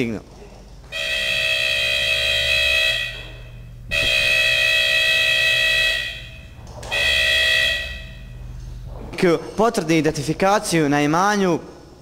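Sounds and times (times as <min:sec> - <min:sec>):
alarm buzzer beeping: 0:00.9 - 0:08.8.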